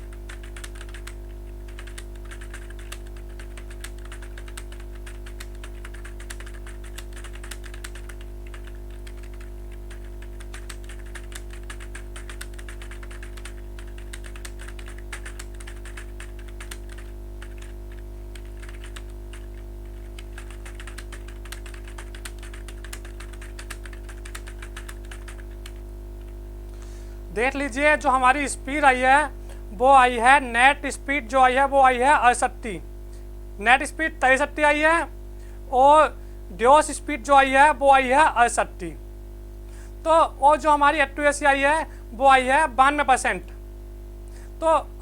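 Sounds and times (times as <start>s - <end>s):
fast keyboard typing: 0.0s - 25.8s
low electrical hum: 0.0s - 45.0s.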